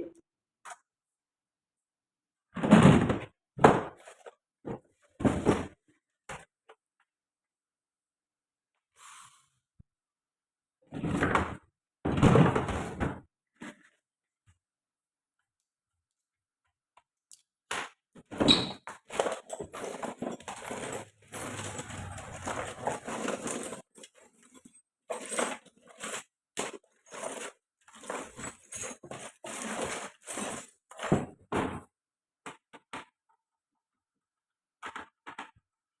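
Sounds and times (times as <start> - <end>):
scraping rustles: 19.0 - 26.3.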